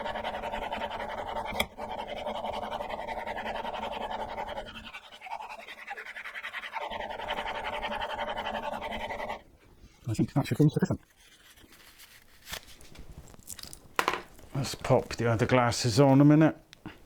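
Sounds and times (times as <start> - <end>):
chisel scraping on sharpening stone: 0.0 - 5.9.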